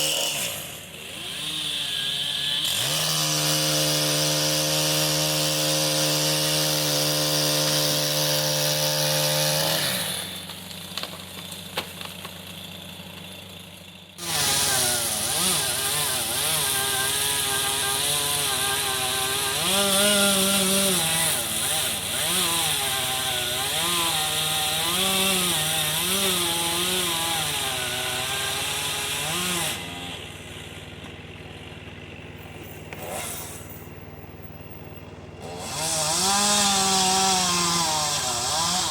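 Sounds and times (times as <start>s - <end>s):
chainsaw cutting wood: 0.0s - 38.9s
chainsaw running: 0.0s - 38.9s.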